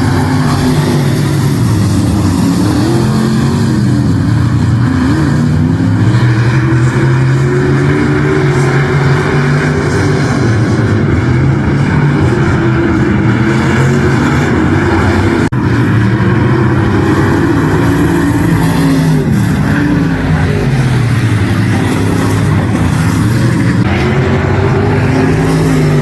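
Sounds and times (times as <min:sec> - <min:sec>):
race car engine running hard: 0:00.0 - 0:26.0.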